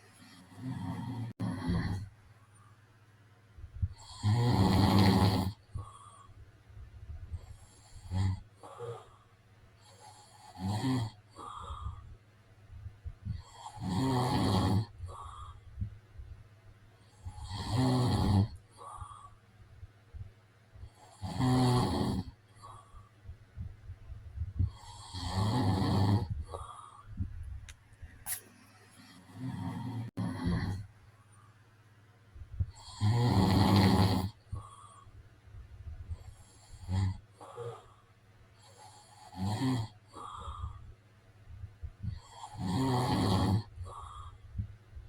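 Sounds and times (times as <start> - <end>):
man snoring: 0.3 - 2.1, 3.9 - 6.2, 7.4 - 9.2, 9.8 - 12.0, 13.2 - 15.6, 17.2 - 19.3, 20.9 - 22.9, 24.6 - 27.1, 29.1 - 30.9, 32.7 - 35.0, 36.3 - 37.9, 38.6 - 40.8, 42.0 - 44.4
soft puff of breath: 28.2 - 29.2.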